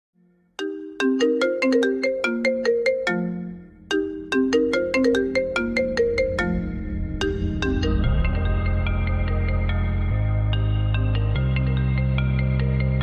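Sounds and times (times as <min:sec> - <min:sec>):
phone ringtone melody: 0:00.5 - 0:09.6.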